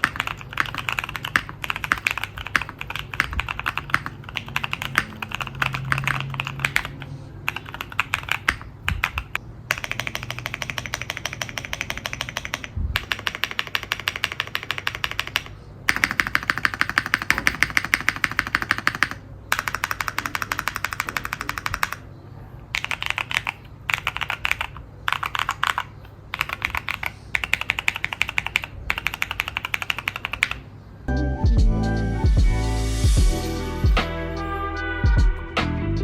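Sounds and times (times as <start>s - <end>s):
mechanical keyboard key clacks: 0.0s - 22.0s.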